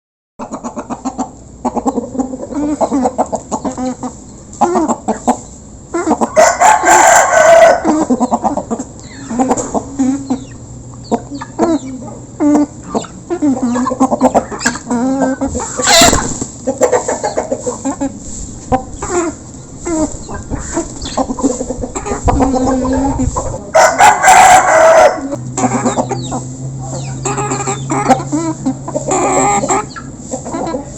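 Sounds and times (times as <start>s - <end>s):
chickens clucking: 0.4s - 30.9s
rooster crowing: 6.3s - 8.0s, 23.7s - 26.2s.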